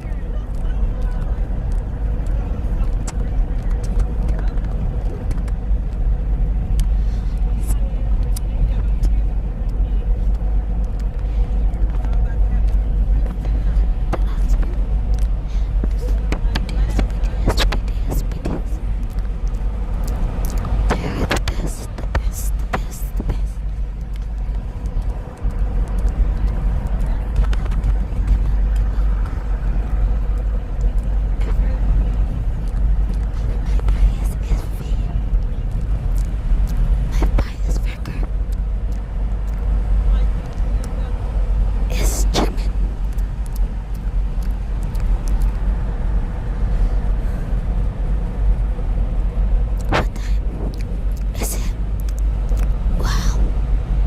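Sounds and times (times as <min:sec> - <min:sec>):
faint scattered clicks: 0:00.0 - 0:41.3, 0:42.0 - 0:45.8, 0:49.7 - 0:53.3
steady low rumble: 0:00.0 - 0:54.0.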